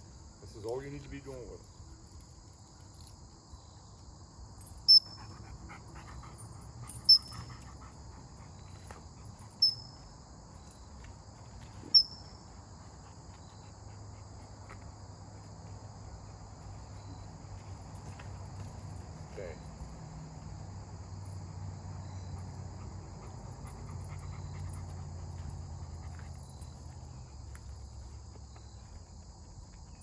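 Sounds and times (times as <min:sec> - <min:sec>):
crickets chirring: 0:00.0 - 0:30.0
sharp high-pitched chirps: 0:04.8 - 0:05.3, 0:07.0 - 0:07.5, 0:09.6 - 0:10.0, 0:11.8 - 0:12.4.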